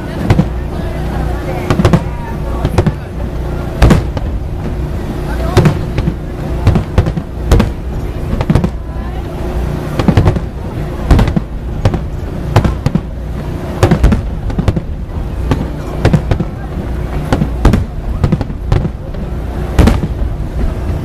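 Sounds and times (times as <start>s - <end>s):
fireworks bursting: 0.0s - 21.0s
low rumble: 0.0s - 21.0s.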